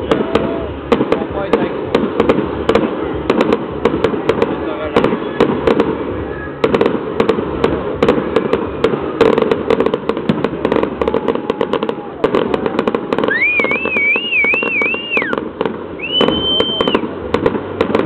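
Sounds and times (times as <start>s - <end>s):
continuous rumble: 0.0s - 18.0s
fireworks bangs and crackling: 0.0s - 18.0s
high wavering whistle: 13.2s - 15.4s, 16.0s - 17.1s.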